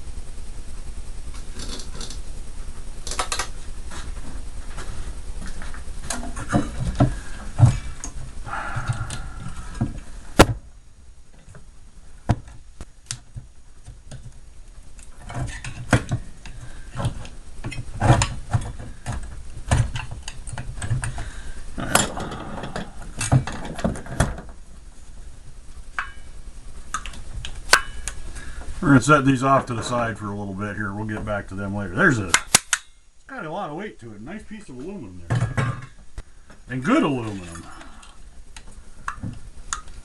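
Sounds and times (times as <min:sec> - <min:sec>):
scraping or rattling: 0:21.8 - 0:24.6
metal and plastic parts clattering: 0:35.3 - 0:36.0.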